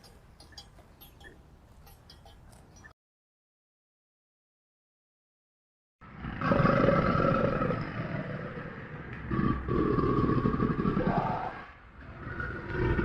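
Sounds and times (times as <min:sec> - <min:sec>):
large animal deep calls: 0:06.0 - 0:13.0.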